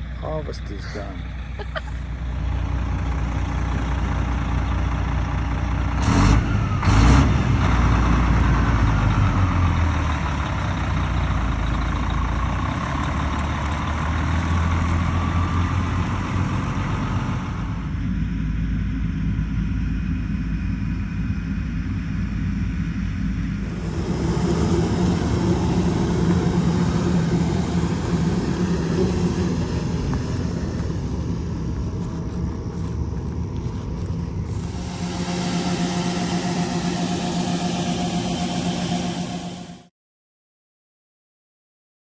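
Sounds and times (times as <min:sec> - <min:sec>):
heavy farm vehicle engine: 0:00.0 - 0:20.2, 0:23.5 - 0:39.9
faint wavering whine: 0:23.6 - 0:32.9, 0:34.4 - 0:39.9.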